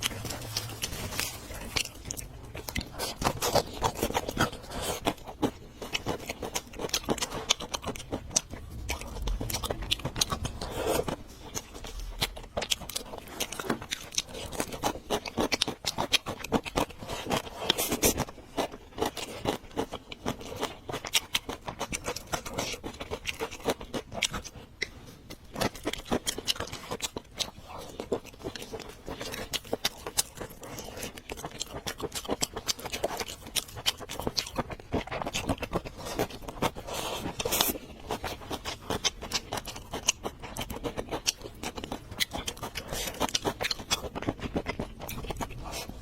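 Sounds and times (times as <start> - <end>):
crunching and chewing: 0.0 - 46.0.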